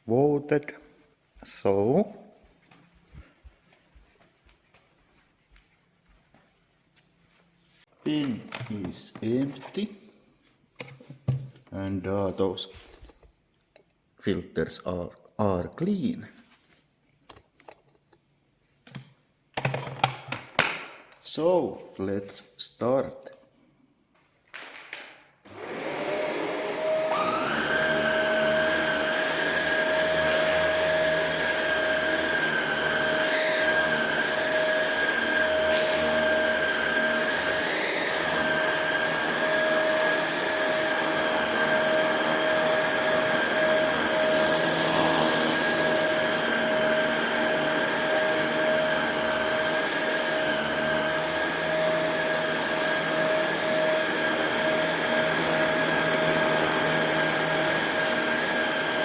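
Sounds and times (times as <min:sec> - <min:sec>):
vacuum cleaner motor whine: 0:25.5 - 0:59.0.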